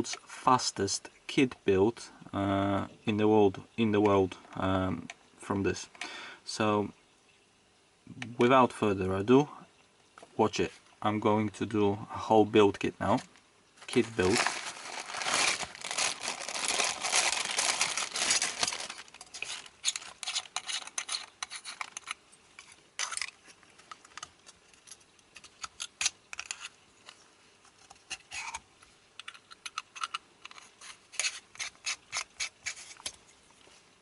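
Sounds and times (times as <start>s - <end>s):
plastic packaging crinkling: 13.8s - 26.7s
small metal parts clicking: 29.2s - 32.3s.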